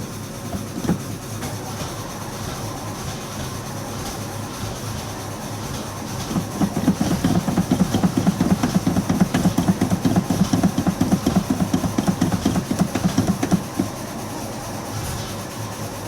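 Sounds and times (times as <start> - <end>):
starter motor cranking engine: 0.4 - 2.1, 5.8 - 14.3.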